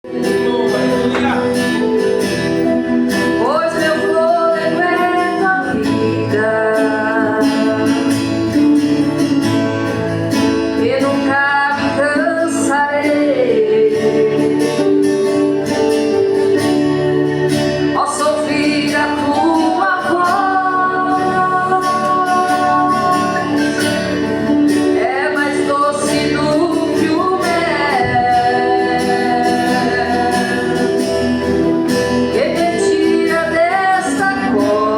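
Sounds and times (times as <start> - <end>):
man and woman singing: 0.0 - 2.0, 3.3 - 8.6, 10.8 - 15.1, 18.0 - 31.4, 32.1 - 34.9
guitar: 0.0 - 34.9.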